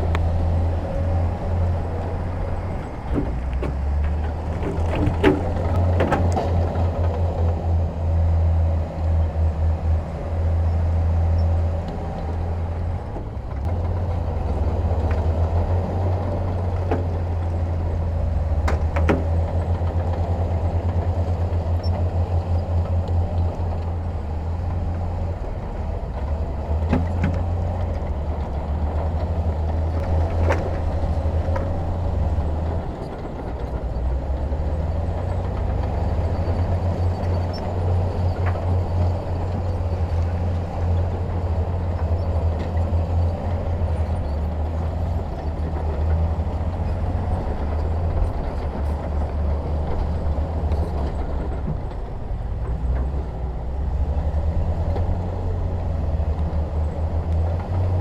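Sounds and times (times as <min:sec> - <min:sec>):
diesel machinery rumbling: 0:00.0 - 0:58.0
short knocks: 0:01.6 - 0:07.0, 0:14.4 - 0:20.2, 0:26.8 - 0:28.0, 0:29.7 - 0:32.5, 0:37.2 - 0:39.7.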